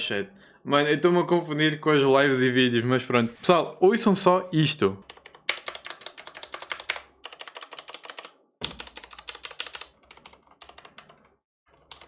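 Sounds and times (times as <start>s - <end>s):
mechanical keyboard typing: 5.0s - 12.0s.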